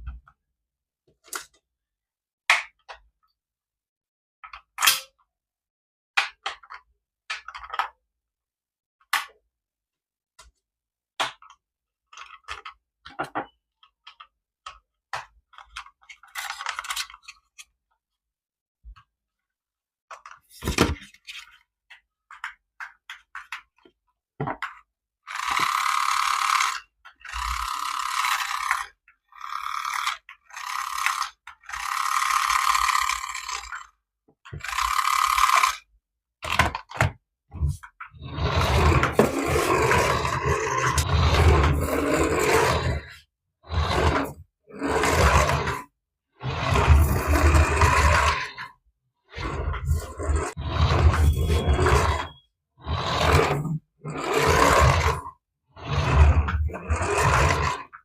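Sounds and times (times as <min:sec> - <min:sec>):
toy motor and gears whirring: 0:25.3 - 0:35.9, 0:38.1 - 0:48.7, 0:49.3 - 0:58.0.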